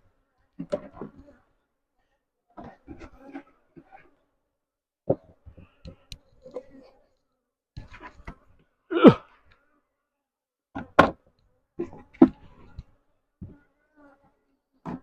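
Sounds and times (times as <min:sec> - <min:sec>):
wooden boxes knocking and thudding: 0:10.8 - 0:11.2.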